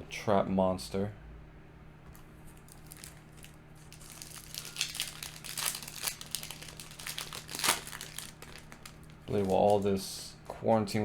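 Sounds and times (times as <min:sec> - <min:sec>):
foil wrapper crinkling: 0:02.5 - 0:10.2.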